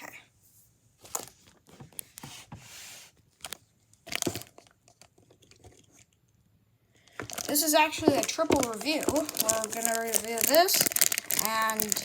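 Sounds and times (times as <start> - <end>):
plastic wrapping crinkling: 3.4 - 6.1, 7.0 - 12.0.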